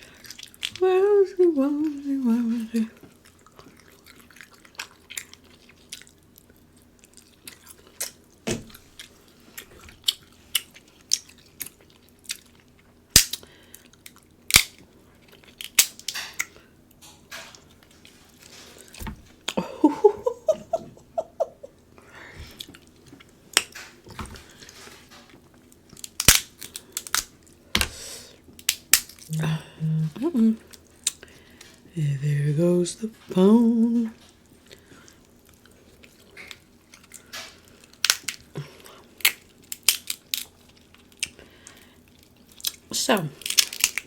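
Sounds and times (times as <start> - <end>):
chewing and mouth sounds: 0.0 - 0.8, 1.9 - 16.6, 22.0 - 27.6, 34.1 - 44.0
shell clicks and cracks: 13.1 - 13.4, 14.5 - 14.8, 15.6 - 16.5, 26.0 - 27.9, 28.6 - 29.2, 37.9 - 38.5, 39.2 - 40.5, 43.4 - 44.0.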